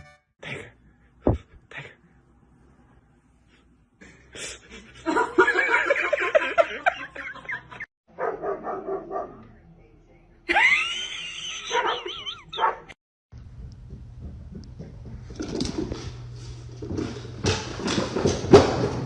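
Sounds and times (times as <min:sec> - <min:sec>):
dog yipping and barking: 0:11.7 - 0:12.9.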